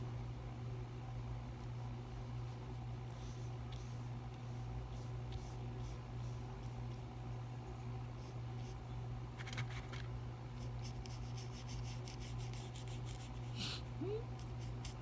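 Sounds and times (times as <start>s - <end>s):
steady low hum: 0.0s - 15.0s
scratching on paper: 2.1s - 8.8s, 10.6s - 13.6s, 14.4s - 15.0s.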